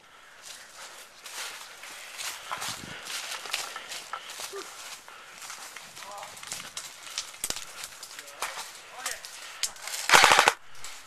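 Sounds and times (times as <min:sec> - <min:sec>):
footsteps through brush: 0:00.0 - 0:11.0.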